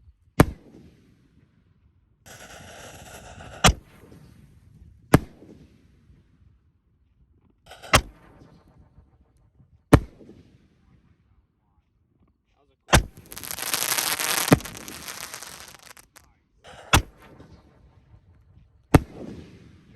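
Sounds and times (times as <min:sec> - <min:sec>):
firework hissing rush: 0:13.0 - 0:16.2
fireworks bangs: 0:13.0 - 0:16.2.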